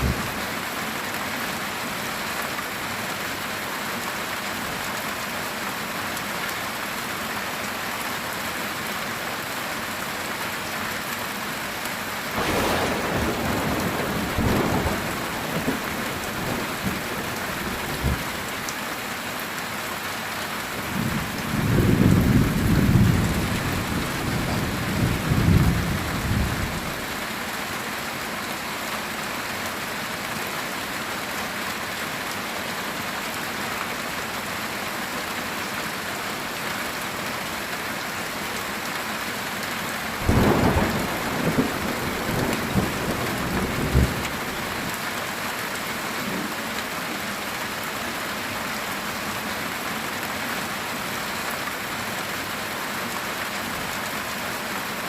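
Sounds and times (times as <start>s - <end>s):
heavy rain on a tin roof: 0.0s - 55.0s
thunder rumbling: 12.4s - 18.4s, 20.9s - 27.1s, 40.2s - 44.9s.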